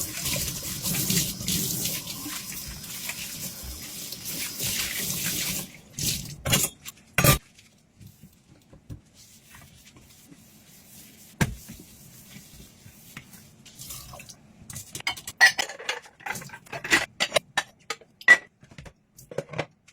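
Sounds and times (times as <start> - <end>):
dishes and cutlery clattering: 15.0 - 18.5.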